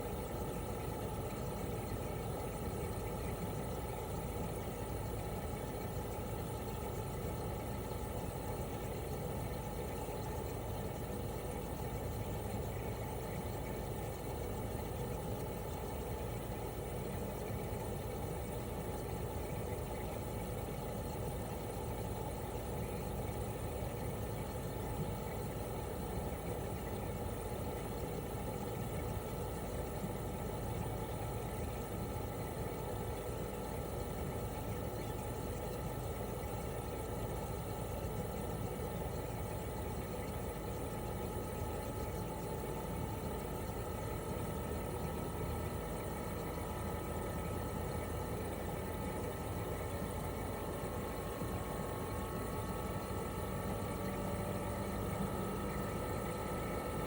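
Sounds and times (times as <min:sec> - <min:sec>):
air conditioner compressor hum: 0:00.0 - 0:57.0
fan noise: 0:00.0 - 0:57.0.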